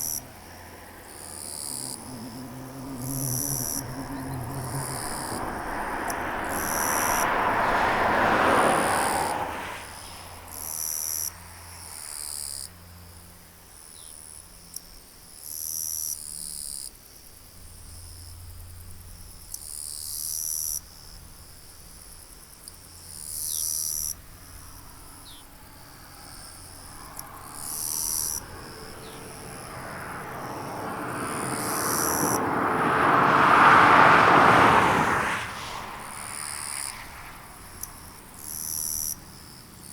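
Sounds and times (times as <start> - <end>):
insects calling in buzzy phrases: 0.0 - 9.6, 25.3 - 32.7
broad rushing noise: 1.9 - 10.4, 26.2 - 38.4.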